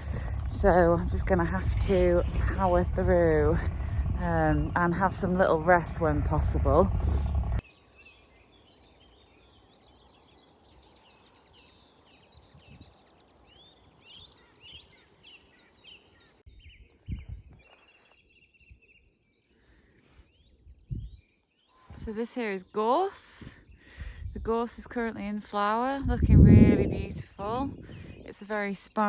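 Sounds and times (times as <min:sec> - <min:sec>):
low thuds: 0:00.0 - 0:07.6
birds chirping and trilling: 0:00.0 - 0:29.0.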